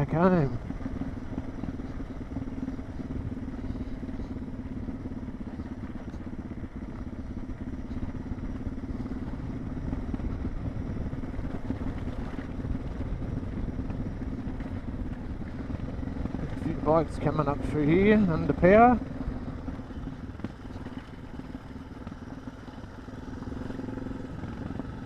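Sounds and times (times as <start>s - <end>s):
motorcycle engine running: 0.0s - 25.0s.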